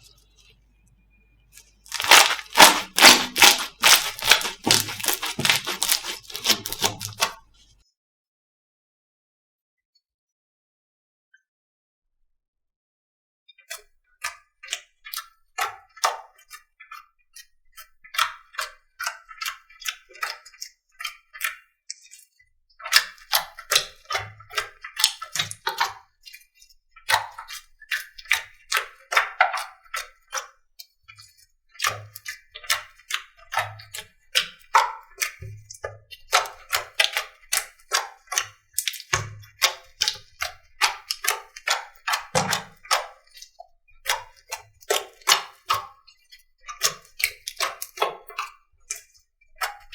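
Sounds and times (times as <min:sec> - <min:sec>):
slime sticky clicks and pops: 0:01.9 - 0:07.4.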